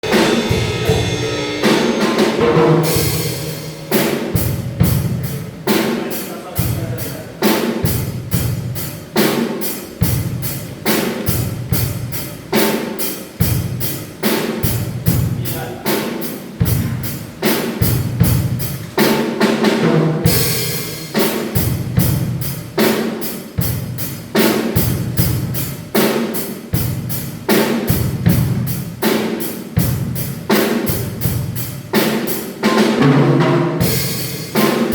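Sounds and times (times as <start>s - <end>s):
cymbals ringing: 0.0s - 7.6s
bass drum and snare: 0.0s - 34.9s.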